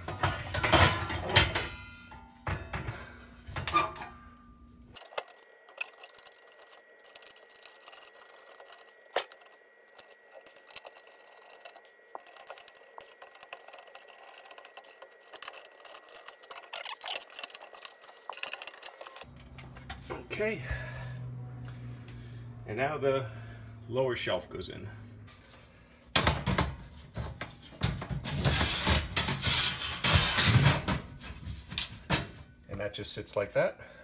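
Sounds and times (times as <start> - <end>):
sheet metal clanking: 0.0 - 4.4
faint clicks and metal rattles: 4.9 - 20.2.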